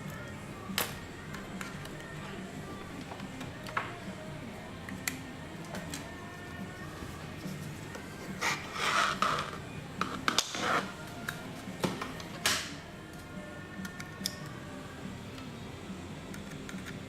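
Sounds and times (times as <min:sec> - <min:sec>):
hard drive rasping scrapes: 0:08.3 - 0:09.6.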